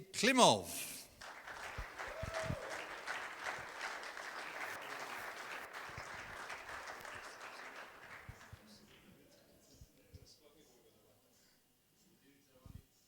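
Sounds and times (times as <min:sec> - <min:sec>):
audience applauding: 0:01.2 - 0:08.9.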